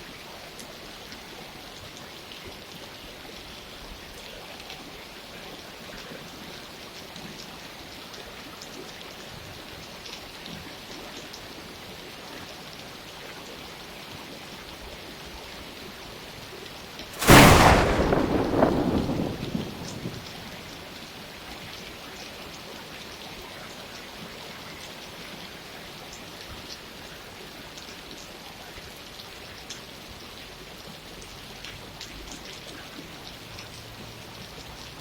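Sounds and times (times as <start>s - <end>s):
thunderclap: 17.2s - 20.7s
steady rainfall: 17.2s - 24.8s.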